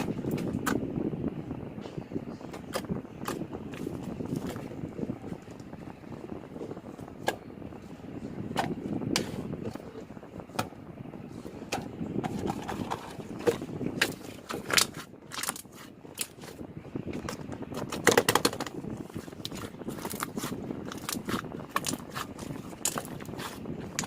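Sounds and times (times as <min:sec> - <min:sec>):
slime squelching by hand: 0:11.7 - 0:24.0.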